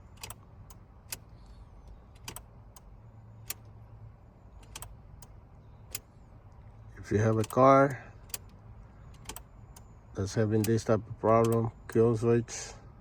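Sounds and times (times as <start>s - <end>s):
sharp clicks: 0.1s - 3.7s, 4.6s - 6.6s, 8.3s - 9.9s, 10.6s - 12.1s.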